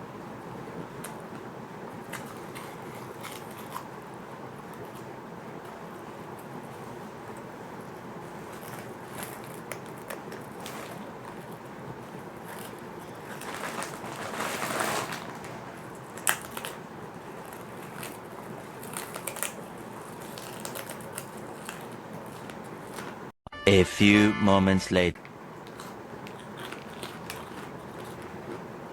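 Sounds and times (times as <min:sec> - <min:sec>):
crackers crunched and chewed: 0:01.0 - 0:23.2, 0:25.6 - 0:28.9
rustling: 0:12.4 - 0:18.2.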